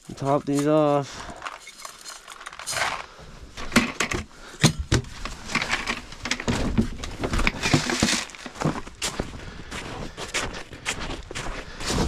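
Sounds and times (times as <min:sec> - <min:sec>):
kibble pouring: 0:01.3 - 0:03.1
feeders and lids knocking: 0:03.7 - 0:08.4.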